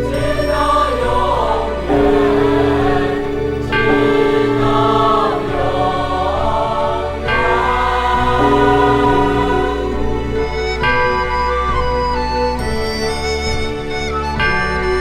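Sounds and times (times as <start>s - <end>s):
choir singing held chords: 1.8s - 10.6s.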